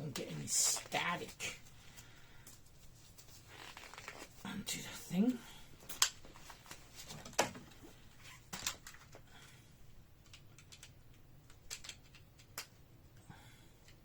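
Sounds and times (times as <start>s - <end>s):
light plastic clicks and rustling: 5.8s - 9.3s, 10.2s - 12.8s.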